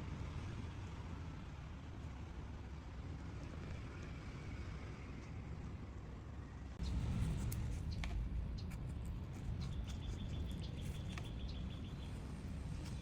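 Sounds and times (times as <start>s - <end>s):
birds chirping: 6.8s - 13.0s.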